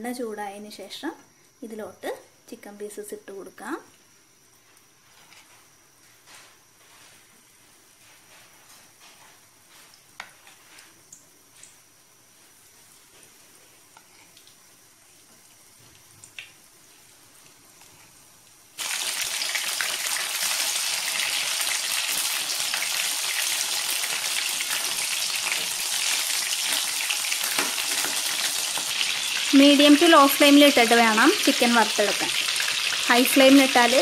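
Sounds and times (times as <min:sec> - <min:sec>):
chicken frying in hot oil: 0:10.0 - 0:34.0.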